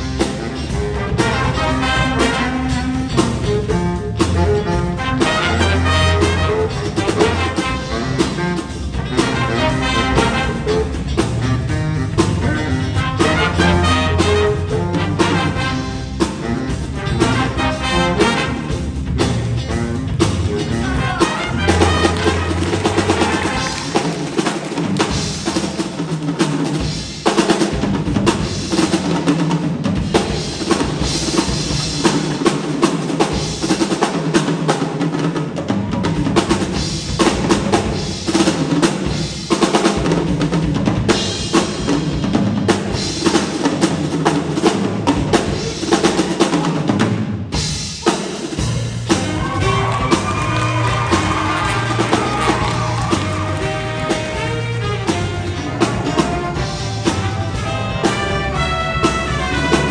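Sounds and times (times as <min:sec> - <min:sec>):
drum kit rhythm: 0:00.0 - 0:59.9
jazz big band playing: 0:00.0 - 0:59.9.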